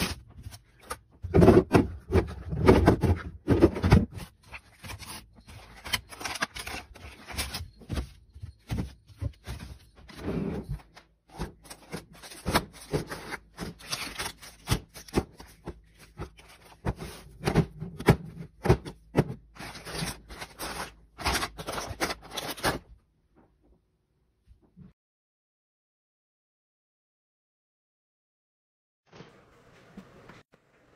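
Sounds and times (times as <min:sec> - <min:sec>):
items and packaging being handled: 0:00.0 - 0:23.1.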